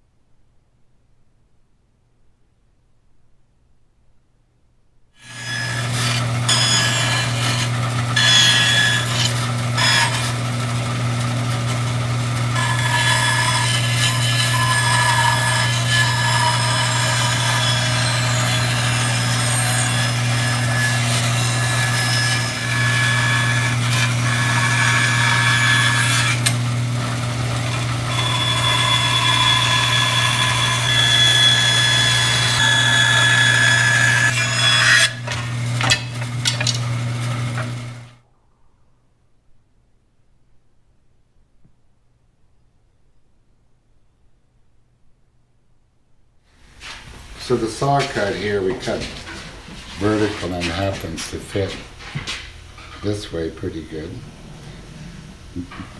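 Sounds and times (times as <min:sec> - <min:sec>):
power saw cutting wood: 0:05.2 - 0:38.1, 0:47.4 - 0:49.1.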